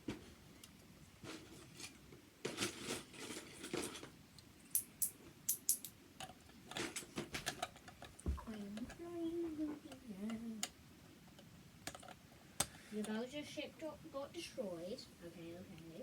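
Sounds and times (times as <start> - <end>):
plastic bricks rustling: 1.2 - 4.2.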